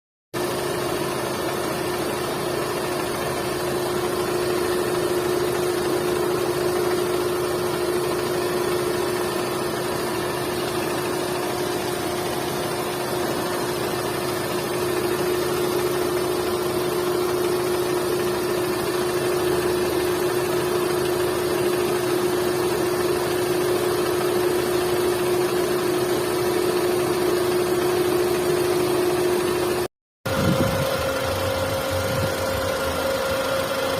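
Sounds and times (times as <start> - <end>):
car engine idling: 1.0 - 29.5, 30.3 - 33.9.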